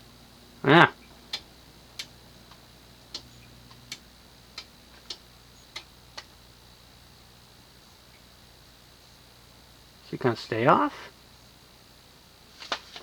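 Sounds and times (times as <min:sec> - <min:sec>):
ceiling fan clicking: 0:00.0 - 0:08.4, 0:12.4 - 0:13.0
faint hum: 0:00.0 - 0:13.0.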